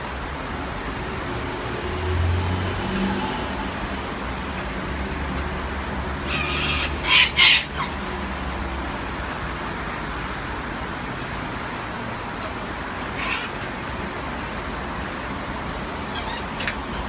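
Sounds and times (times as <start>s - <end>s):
low traffic rumble: 0.0s - 17.0s
parrots squawking: 3.6s - 17.0s.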